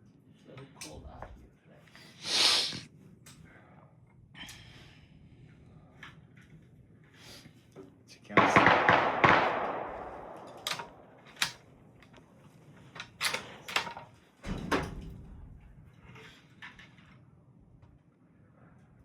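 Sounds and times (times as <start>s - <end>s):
sharp clacks and knocks: 8.8s - 11.6s.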